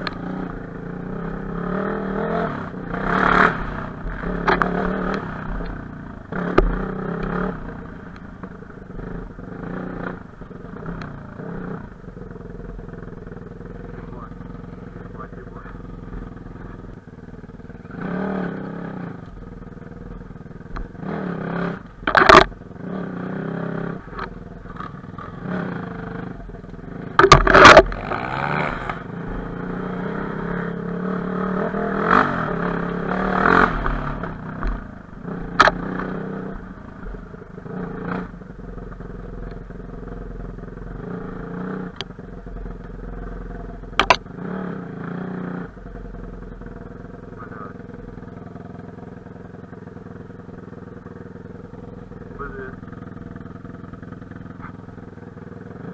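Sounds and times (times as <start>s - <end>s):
motorcycle engine revving: 0.0s - 55.9s
sharp knocks and clatters: 22.0s - 22.6s, 27.1s - 28.1s, 43.9s - 44.3s.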